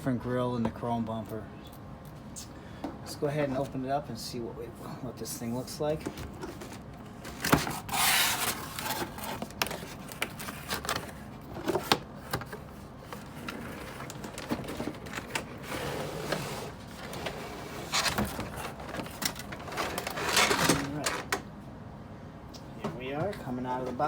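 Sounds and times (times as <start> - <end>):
cardboard rustling and scraping: 5.9 - 21.4.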